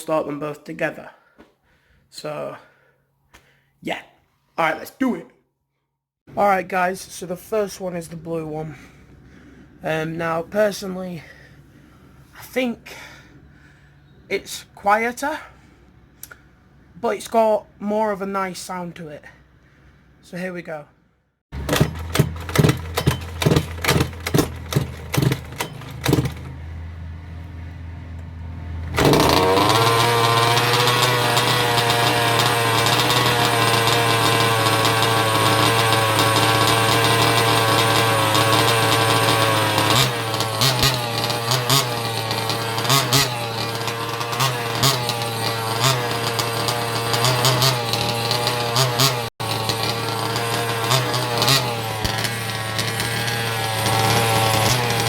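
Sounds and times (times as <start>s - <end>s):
small two-stroke engine: 21.5s - 55.0s.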